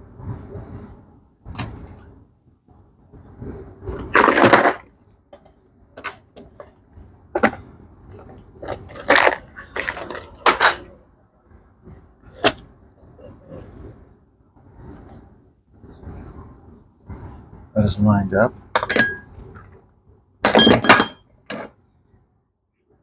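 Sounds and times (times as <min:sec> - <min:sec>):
metal parts scraping clatter: 0:20.5 - 0:21.7.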